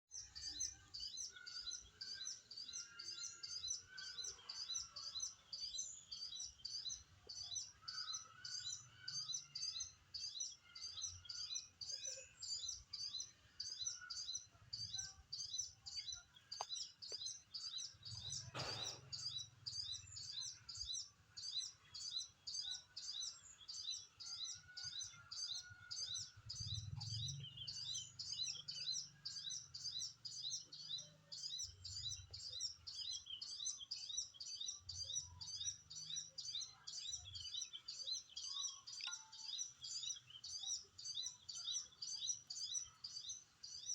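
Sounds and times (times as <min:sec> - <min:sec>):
faint lower bird calls: 0:00.4 - 0:23.3
sharp knock: 0:18.5 - 0:19.2.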